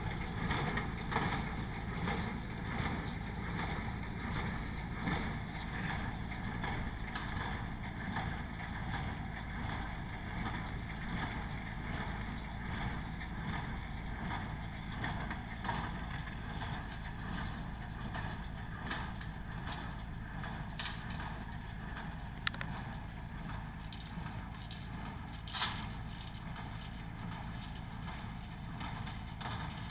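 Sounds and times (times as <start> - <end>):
tractor running: 0.0 - 29.9.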